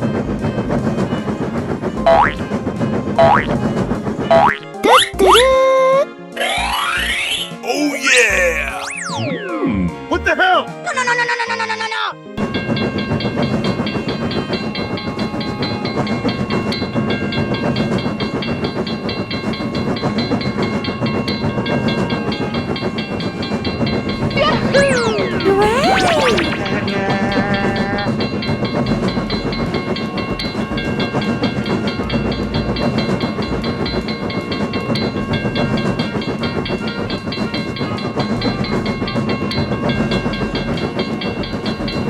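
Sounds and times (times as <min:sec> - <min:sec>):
train rumbling on rails: 0:00.0 - 0:07.5, 0:12.4 - 0:42.0
cartoon boing: 0:25.4 - 0:26.7.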